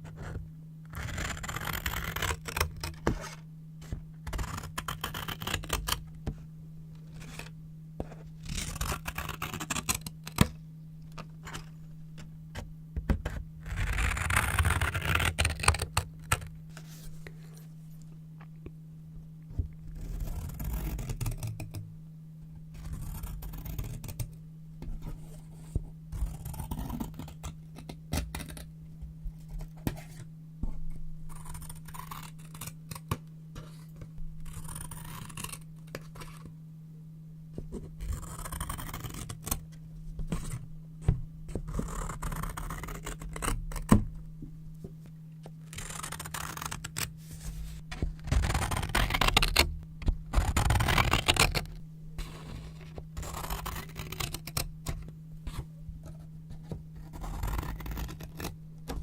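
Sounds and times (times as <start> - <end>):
scissors snipping paper: 53.2 - 55.6.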